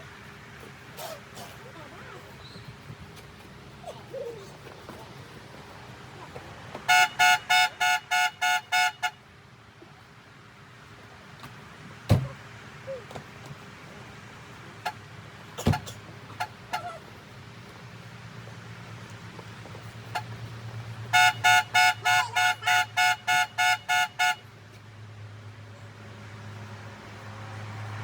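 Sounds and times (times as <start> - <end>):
horn beeping: 6.8 - 9.2, 21.1 - 24.5.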